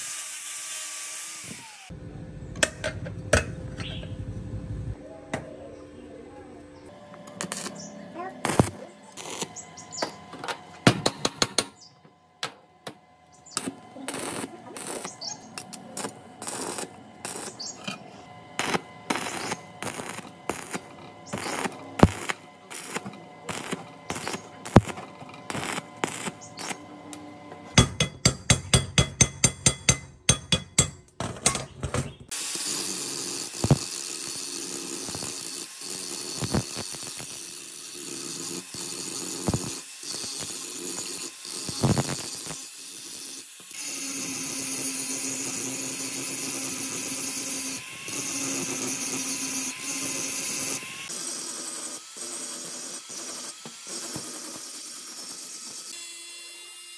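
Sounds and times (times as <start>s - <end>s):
power tool running: 0.0s - 2.0s, 6.9s - 27.8s, 32.3s - 56.9s.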